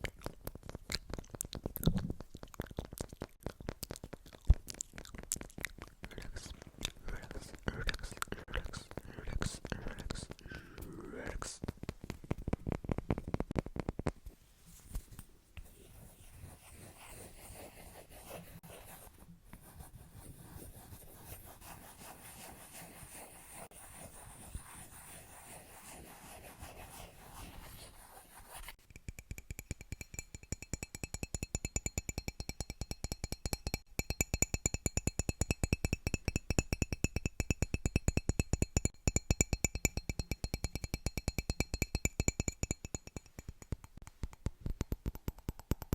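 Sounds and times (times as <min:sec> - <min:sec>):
soft steady scratching: 0:00.2 - 0:28.9
fast tapping on hard objects: 0:11.6 - 0:14.2, 0:28.8 - 0:45.9
fast tapping with ringing tone: 0:28.8 - 0:45.9.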